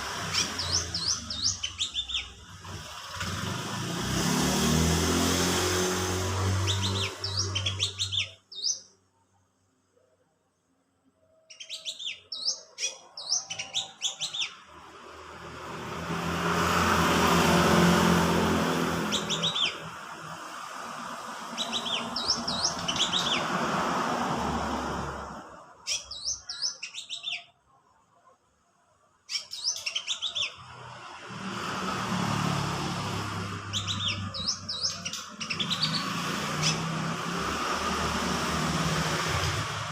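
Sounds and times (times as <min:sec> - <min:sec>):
bird chirping: 0:00.1 - 0:02.6, 0:06.2 - 0:09.0, 0:11.2 - 0:14.8, 0:18.8 - 0:20.2, 0:21.4 - 0:23.6, 0:25.8 - 0:27.6, 0:29.3 - 0:30.8, 0:33.5 - 0:37.0.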